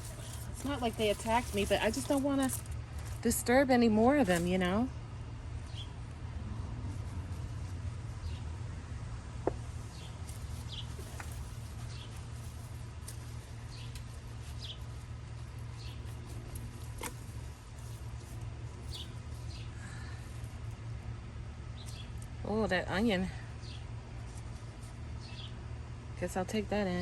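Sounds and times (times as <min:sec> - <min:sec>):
steady low rumble: 0:00.0 - 0:27.0.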